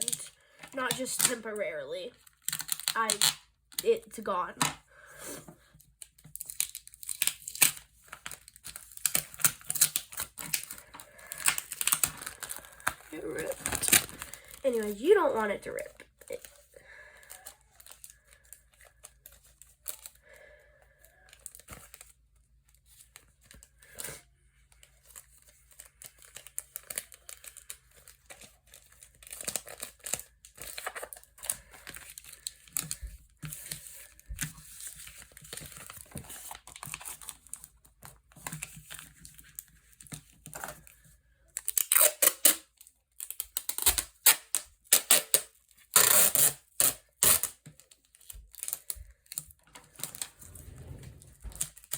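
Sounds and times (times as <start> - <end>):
paper crinkling and rustling: 5.8 - 14.6, 21.2 - 42.0, 42.7 - 51.9
paper tearing: 13.4 - 14.5, 43.6 - 47.6.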